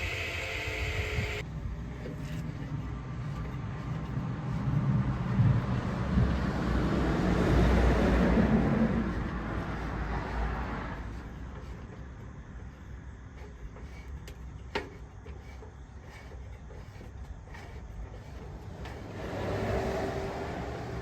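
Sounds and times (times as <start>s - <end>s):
table saw running: 0.0s - 1.4s.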